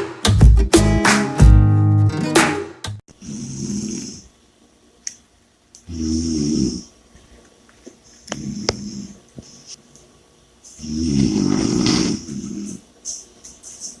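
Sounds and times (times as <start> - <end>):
person snoring: 3.1 - 4.3, 5.8 - 6.9, 8.4 - 9.2, 10.8 - 12.8.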